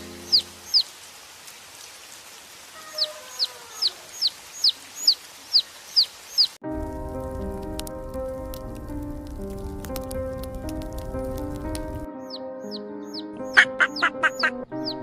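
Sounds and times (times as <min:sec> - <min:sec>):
baby chicks peeping: 0:00.3 - 0:00.9, 0:03.0 - 0:06.5, 0:11.8 - 0:15.0.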